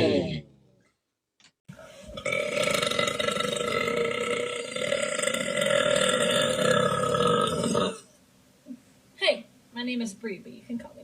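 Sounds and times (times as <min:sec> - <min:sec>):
person burping: 0:02.0 - 0:08.1.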